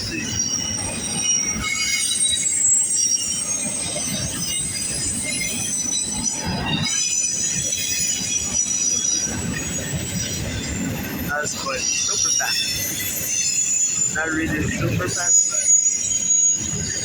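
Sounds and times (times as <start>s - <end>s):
high-pitched wheel squeal: 0.0s - 17.0s
train wheels rumbling and clattering: 0.0s - 17.0s.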